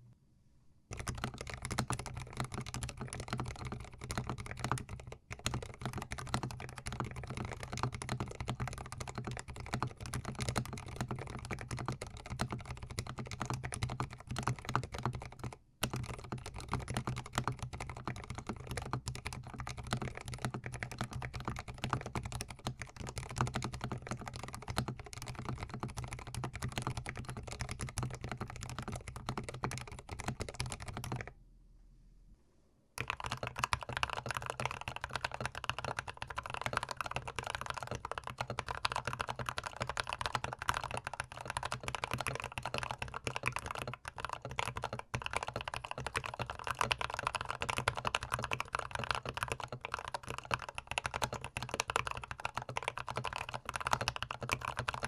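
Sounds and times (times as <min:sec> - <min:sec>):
mechanical keyboard typing: 0:00.9 - 0:31.3, 0:33.0 - 0:55.0.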